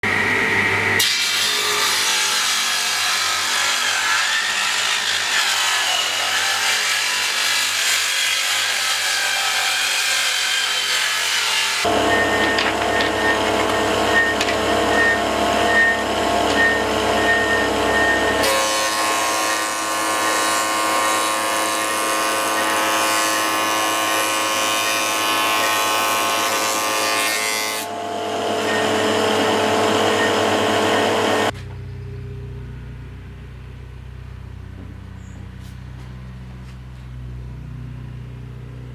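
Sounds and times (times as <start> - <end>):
electric power tool humming: 11.6 - 20.3, 27.8 - 31.5.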